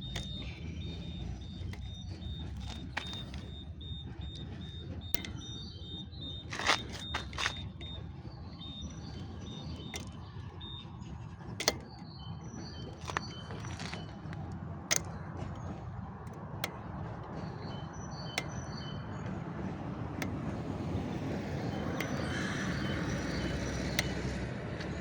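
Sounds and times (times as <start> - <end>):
bicycle rolling: 0.0 - 25.0
wind rumble: 0.0 - 25.0
sharp click from bicycle: 5.1 - 5.6, 6.5 - 8.0, 9.7 - 10.5, 11.6 - 12.0, 13.0 - 19.4, 20.2 - 25.0.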